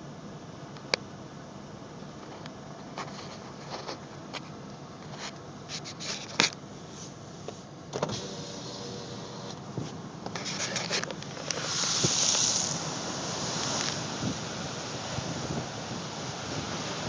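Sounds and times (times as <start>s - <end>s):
muffled wind and surf: 9.7s - 17.0s.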